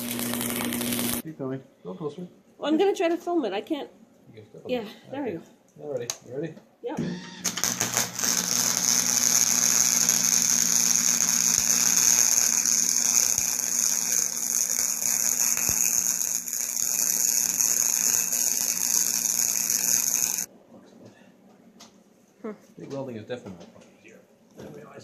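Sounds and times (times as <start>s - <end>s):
welder hissing and humming: 0.0s - 1.2s, 7.2s - 20.5s.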